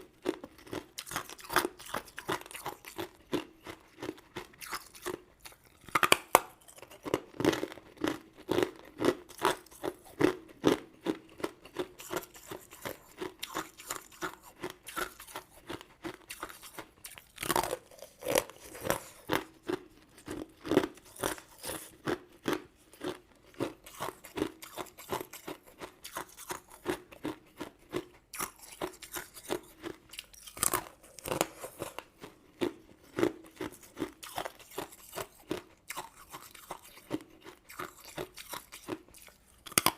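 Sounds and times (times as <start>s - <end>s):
crunchy sweets being chewed: 0.0s - 39.9s
loud cracks of biting: 4.6s - 7.6s, 33.2s - 39.9s.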